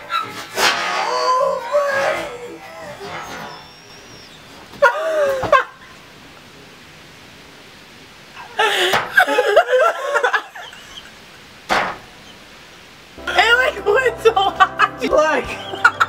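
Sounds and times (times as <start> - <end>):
people laughing and exclaiming: 0.8 - 6.0, 8.5 - 11.4, 13.2 - 16.0.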